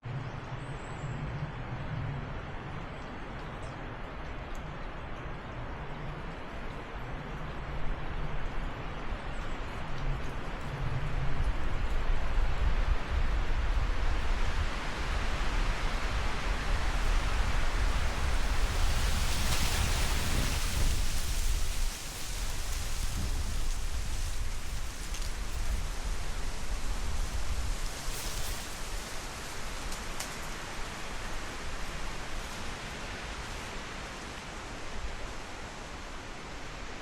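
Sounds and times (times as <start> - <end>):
leaves rustling in gusty wind: 0.0 - 37.0
wind buffeting microphone: 7.6 - 33.4.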